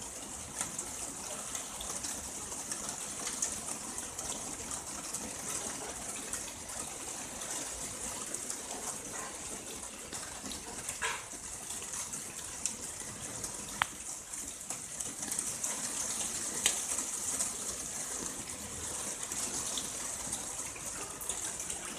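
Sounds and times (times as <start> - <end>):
sharp drip ticks: 13.7 - 14.2.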